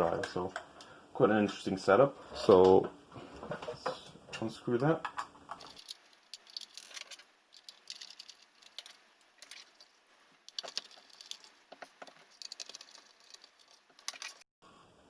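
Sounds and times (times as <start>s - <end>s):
screwdriver metallic clicks and scrapes: 5.6s - 14.4s.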